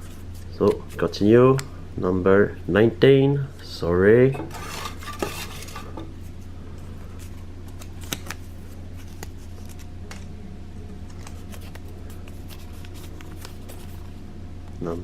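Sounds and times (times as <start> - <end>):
steady low hum: 0.0 - 15.0
paper tickets rustling: 7.1 - 10.4, 11.0 - 14.1.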